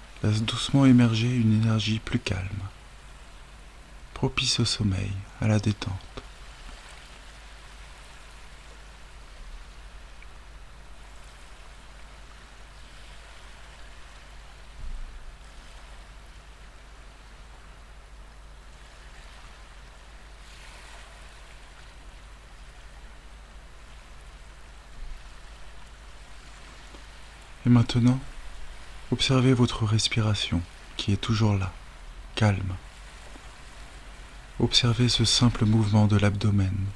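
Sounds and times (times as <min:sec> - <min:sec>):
ocean waves washing in: 0:00.0 - 0:36.9.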